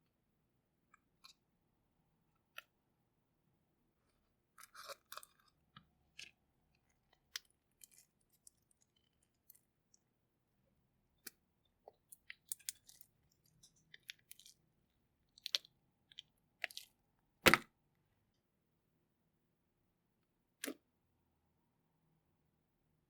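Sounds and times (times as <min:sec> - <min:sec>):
slime crackling and clicking: 0:12.1 - 0:14.6.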